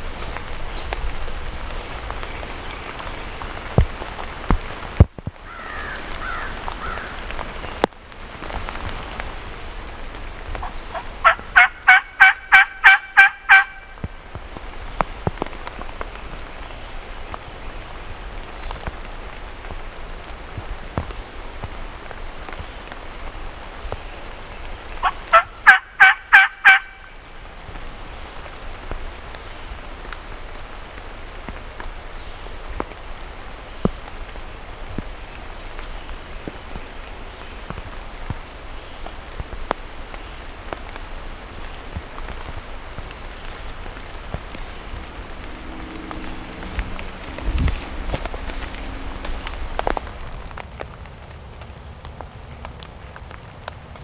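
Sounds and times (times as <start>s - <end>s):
rain hiss: 0.0s - 54.0s
turkey yelps: 10.6s - 13.9s, 25.0s - 27.0s.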